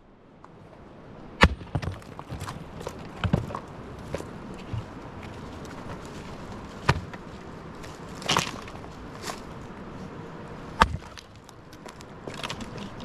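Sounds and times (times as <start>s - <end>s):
sharp crack: 1.4s - 2.5s
sharp knocks and crunches: 1.4s - 9.7s, 10.7s - 13.0s
scraping crunch: 1.4s - 13.0s.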